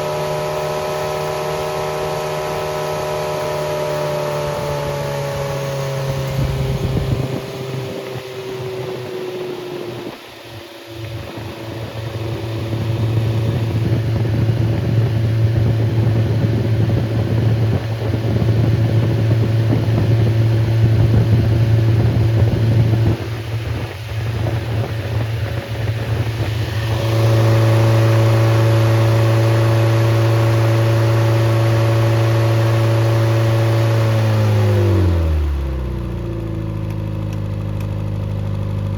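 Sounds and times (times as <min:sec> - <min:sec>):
car engine running: 0:00.0 - 0:38.9.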